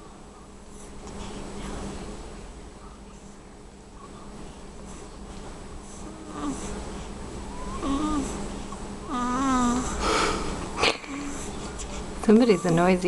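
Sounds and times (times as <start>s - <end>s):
snort: 6.1s - 6.8s, 7.8s - 8.4s.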